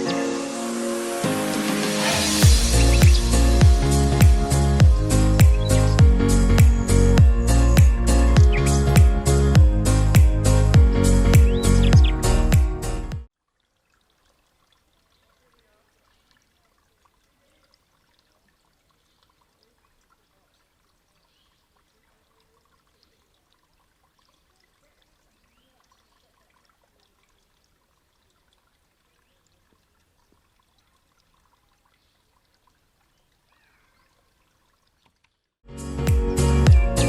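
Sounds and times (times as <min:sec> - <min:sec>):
faint trickle of creek water: 0:02.0 - 0:06.8, 0:13.3 - 0:35.7.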